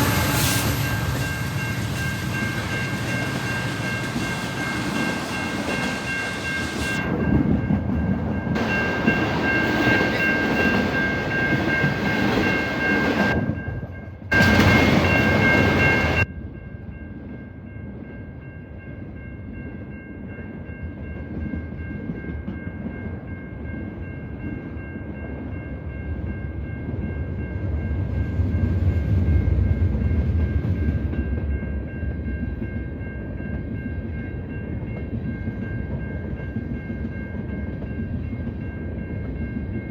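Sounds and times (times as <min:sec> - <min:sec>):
steady high ringing chord: 0:00.0 - 0:07.4
train rumble and wheel clatter: 0:00.0 - 0:39.9.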